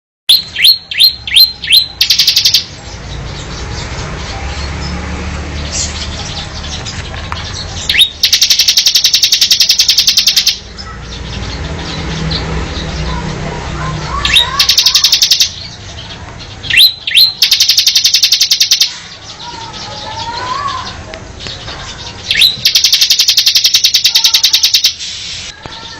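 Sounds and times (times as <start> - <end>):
bird singing high trill: 0.3 - 3.8, 5.7 - 11.0, 14.0 - 25.9.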